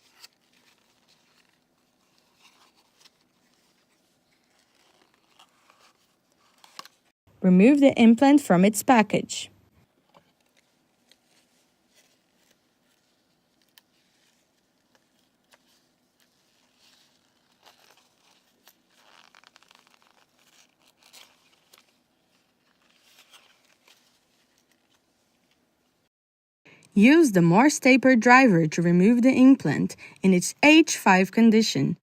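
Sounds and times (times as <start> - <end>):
plastic packaging rustling: 0.0 - 7.1, 10.3 - 25.5.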